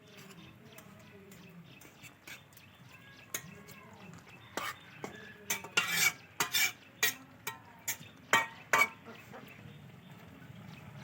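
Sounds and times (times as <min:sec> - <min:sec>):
spatula scraping cooking pot: 0:00.0 - 0:02.6, 0:03.3 - 0:09.4.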